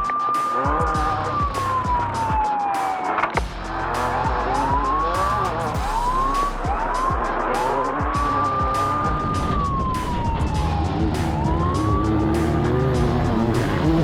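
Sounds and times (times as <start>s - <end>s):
race vehicle engine revving: 3.5s - 14.0s.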